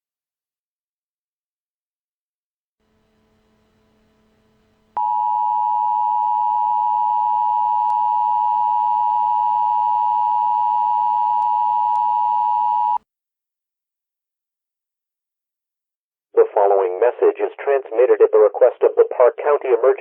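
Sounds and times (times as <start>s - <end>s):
electronic alarm tone: 5.0s - 13.0s.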